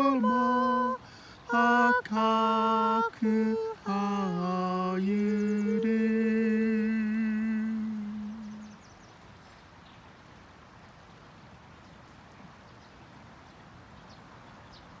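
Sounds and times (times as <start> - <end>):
faint river rushing: 0.0 - 15.0
faint bird chirps: 4.2 - 10.1.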